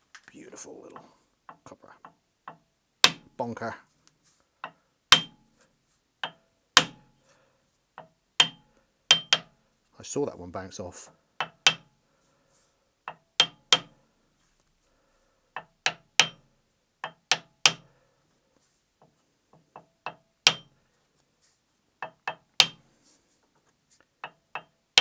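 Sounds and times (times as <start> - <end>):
mallet tapping steel shaft: 1.5 - 3.4, 4.6 - 5.4, 6.2 - 7.0, 8.0 - 9.5, 11.4 - 11.9, 13.1 - 14.0, 15.6 - 16.4, 17.0 - 17.9, 19.8 - 20.7, 22.0 - 22.8.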